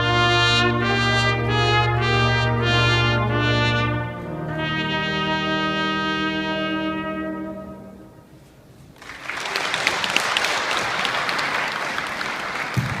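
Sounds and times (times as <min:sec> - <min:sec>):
held trumpet note: 0:00.0 - 0:08.7
audience applauding: 0:09.0 - 0:13.0.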